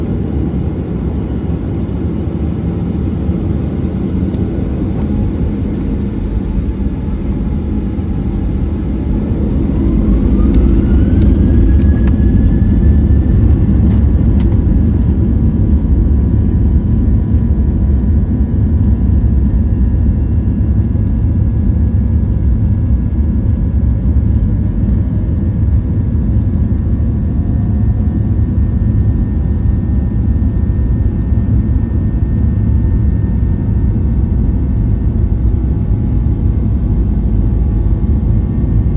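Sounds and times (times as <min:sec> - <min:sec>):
jet engines spooling up: 0:00.0 - 0:16.6.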